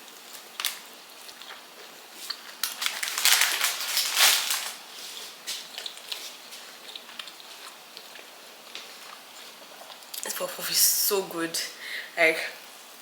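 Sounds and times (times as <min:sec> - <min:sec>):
food packaging crinkling and rustling: 0:00.0 - 0:10.3.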